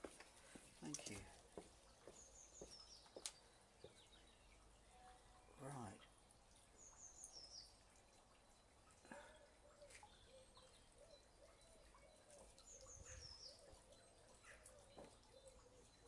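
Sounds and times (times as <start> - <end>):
lower wavering bird calls: 9.2 - 16.0.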